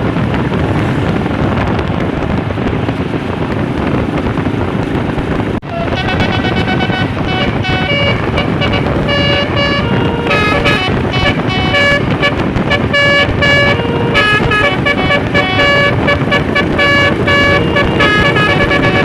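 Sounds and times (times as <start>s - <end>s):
bus air horn melody: 5.6s - 19.0s.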